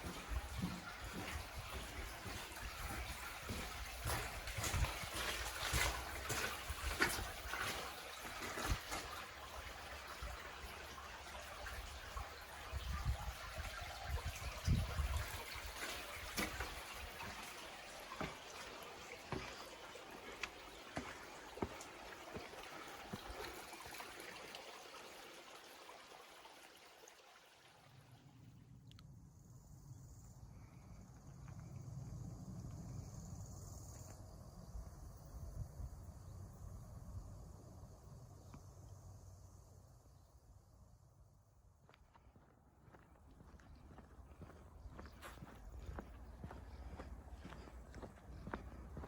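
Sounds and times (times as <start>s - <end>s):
stream trickling: 0.0s - 40.7s, 41.9s - 49.0s.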